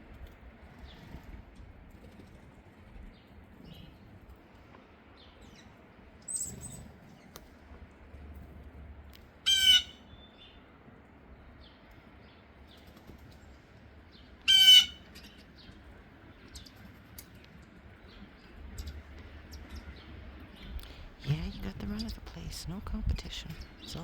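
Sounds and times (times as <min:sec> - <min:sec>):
harsh bird call: 0:09.5 - 0:10.0, 0:14.5 - 0:15.0.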